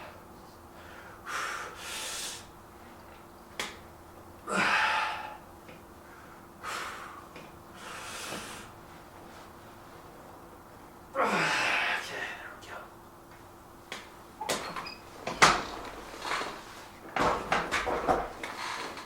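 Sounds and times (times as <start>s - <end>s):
man breathing in sharp huffs: 0.7s - 2.5s, 4.5s - 8.8s.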